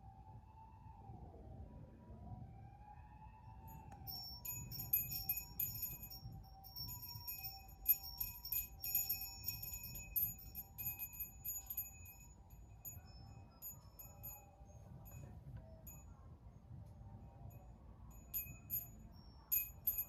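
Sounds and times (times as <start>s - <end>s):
tinkling bell and chime music: 3.8s - 16.1s, 17.6s - 20.0s.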